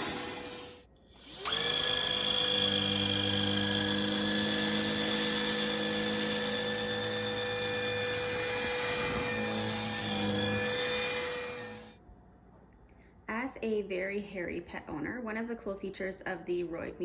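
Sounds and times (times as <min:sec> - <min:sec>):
stick vacuum running: 0:00.0 - 0:11.9.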